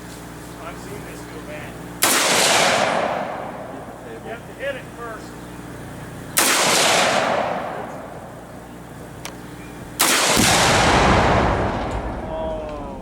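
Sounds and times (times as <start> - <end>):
rifle shots with rolling echoes: 1.9 - 4.2, 5.7 - 9.1, 10.0 - 13.0
deep explosion boom: 10.2 - 13.0.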